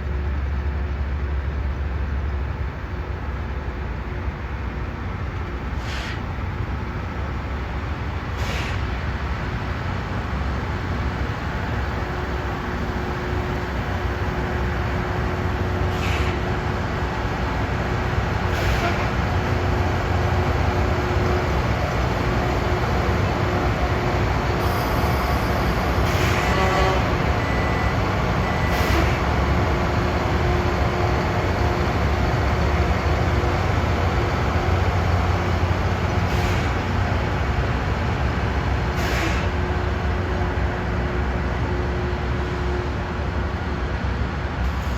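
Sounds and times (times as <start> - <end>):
rail grinding machine: 9.3 - 38.3.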